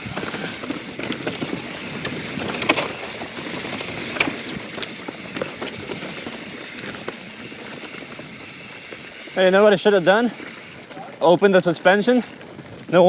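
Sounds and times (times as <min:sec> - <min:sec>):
wind noise: 0:00.0 - 0:08.6
mountain bike rattling: 0:00.0 - 0:13.0
tyre noise: 0:00.0 - 0:13.0
wheels knocking on rocks: 0:00.0 - 0:13.0.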